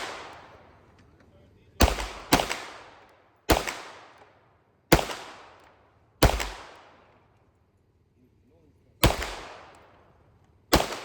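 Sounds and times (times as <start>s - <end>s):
pistol shots echoing: 0.0s - 0.8s, 1.8s - 7.2s, 9.0s - 11.0s.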